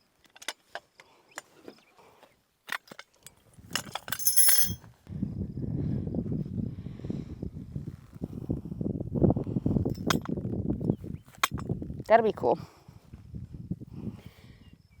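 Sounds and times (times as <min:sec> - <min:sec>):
metallic clicks and knocks: 0:02.7 - 0:04.8
metal clanking and ringing: 0:03.8 - 0:04.8, 0:09.9 - 0:10.3.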